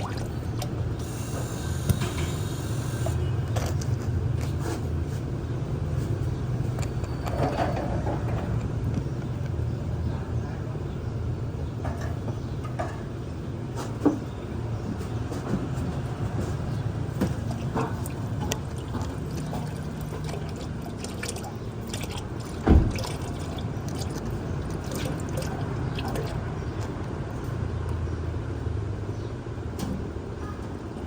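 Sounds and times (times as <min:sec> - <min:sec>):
oil pouring: 0:17.3 - 0:27.2.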